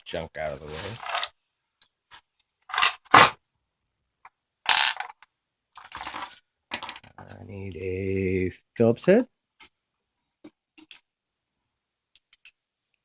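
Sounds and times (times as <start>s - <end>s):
objects scraping: 0.4s - 1.4s, 5.8s - 7.4s.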